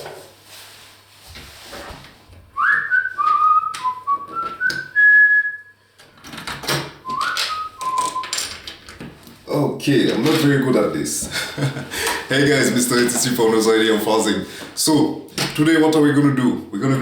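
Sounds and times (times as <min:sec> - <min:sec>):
rustling: 0:00.0 - 0:04.8
person whistling a tune: 0:02.6 - 0:05.8, 0:07.0 - 0:08.4.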